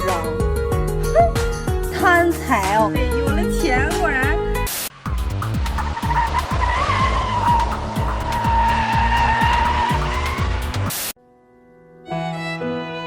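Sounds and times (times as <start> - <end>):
music with heavy fast beat: 4.9 - 11.1
wavering high-pitched squeal: 5.6 - 11.0.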